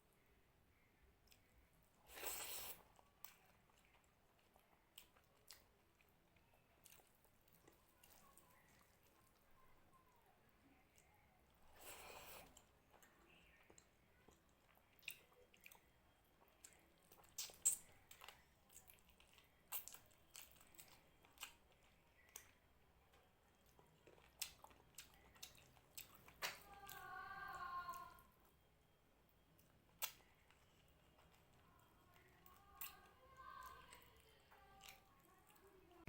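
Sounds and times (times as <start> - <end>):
person chewing food: 1.2 - 9.4, 10.9 - 28.6, 29.5 - 35.9
wet mouth clicks and smacks: 16.6 - 21.6, 29.6 - 30.3.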